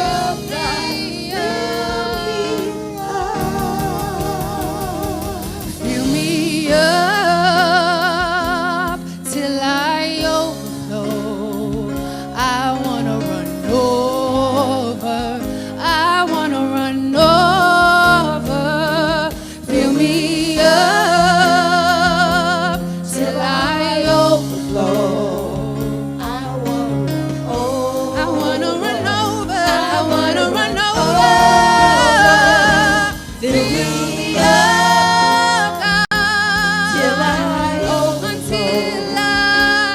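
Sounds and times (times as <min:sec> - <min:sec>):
steady beat: 0:00.0 - 0:07.1, 0:29.6 - 0:39.8
long held bass notes: 0:00.0 - 0:09.0, 0:24.6 - 0:39.9
person singing with vibrato: 0:00.0 - 0:39.9.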